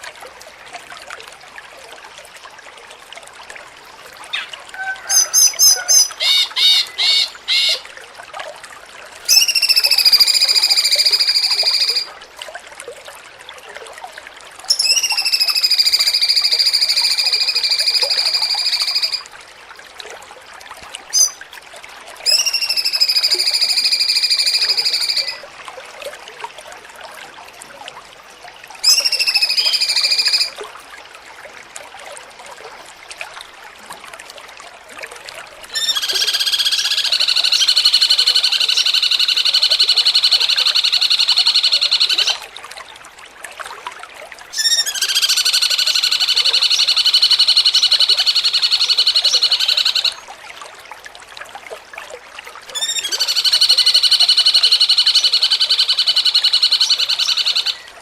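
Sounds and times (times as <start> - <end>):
bird whistling song: 5.0 - 7.7, 9.3 - 12.1, 14.7 - 19.2, 21.1 - 21.4, 22.3 - 25.4, 28.8 - 30.5, 35.8 - 42.4, 44.6 - 50.2, 52.8 - 57.9.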